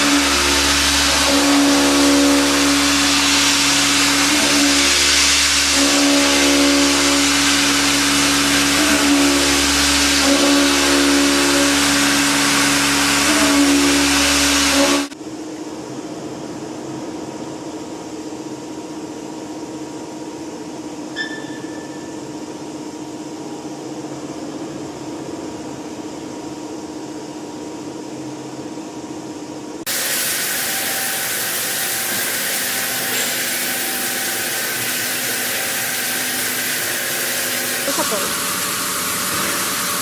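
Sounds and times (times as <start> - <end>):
hissing machine noise: 0.0 - 15.2, 29.8 - 40.0
machinery hum with held tone: 0.0 - 40.0
short high beep: 21.2 - 22.2.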